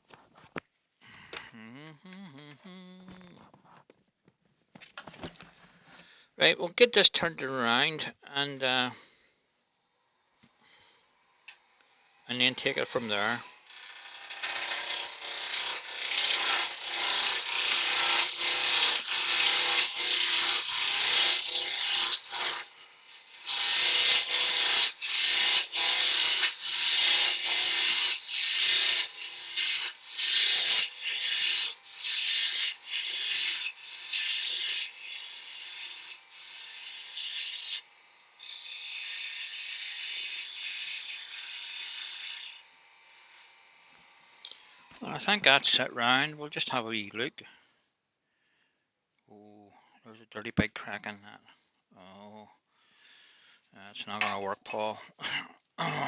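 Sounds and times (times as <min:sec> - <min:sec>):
lathe tool chattering on wood: 0:12.8 - 0:37.8, 0:38.4 - 0:42.7.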